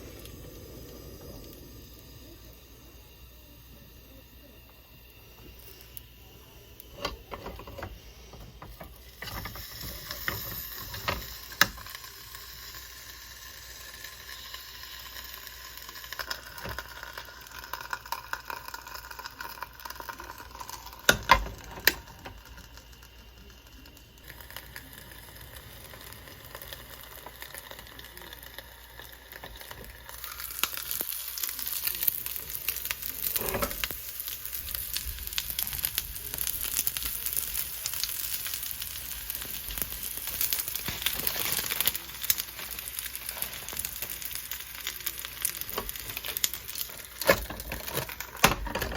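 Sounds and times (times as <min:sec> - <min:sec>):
crackles: 0:00.0 - 0:48.9
food sizzling in sandwich maker: 0:00.0 - 0:48.9.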